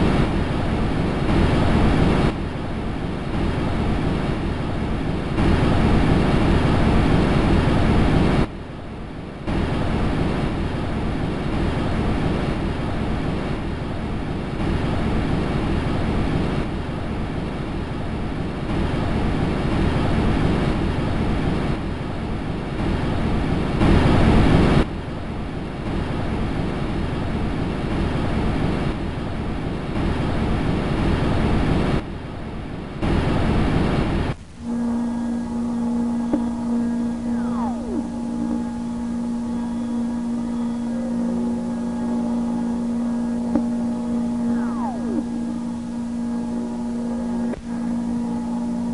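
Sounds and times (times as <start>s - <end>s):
dense noisy rush: 0.0s - 48.9s.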